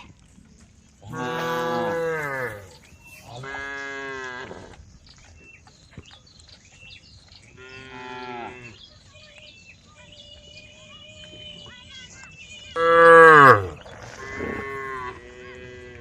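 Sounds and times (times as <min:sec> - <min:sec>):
cows mooing: 0:01.1 - 0:02.8, 0:12.8 - 0:15.9.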